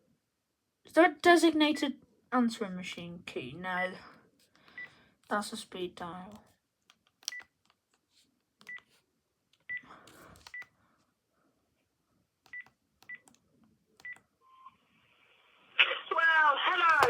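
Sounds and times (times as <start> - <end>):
phone key clicks with beeps: 7.2 - 7.5.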